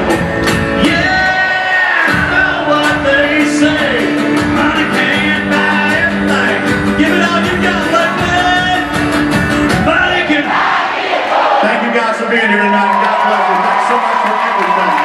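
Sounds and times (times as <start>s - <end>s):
driving drum beat: 0.0s - 10.6s
guitar: 0.0s - 10.6s
live country-rock music: 0.0s - 10.9s.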